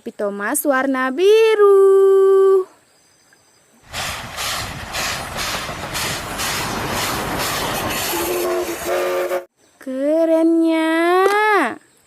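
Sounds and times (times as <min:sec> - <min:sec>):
steam locomotive chugging: 0:03.9 - 0:09.5
train whistle: 0:07.9 - 0:09.5.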